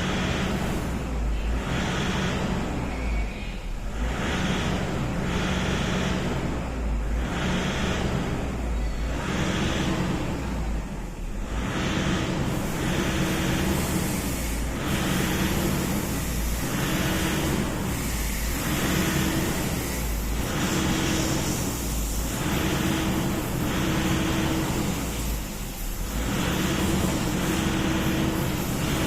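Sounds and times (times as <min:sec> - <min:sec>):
diesel engine unsteady idle: 0:00.0 - 0:29.0.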